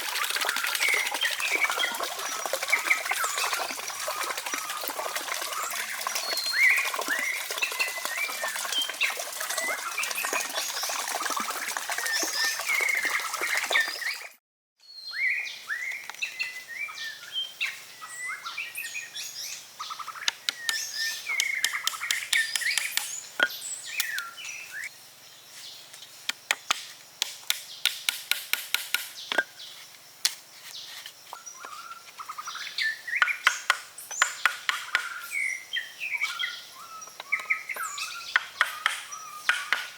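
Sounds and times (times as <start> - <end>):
birds chirping: 15.0 - 24.9.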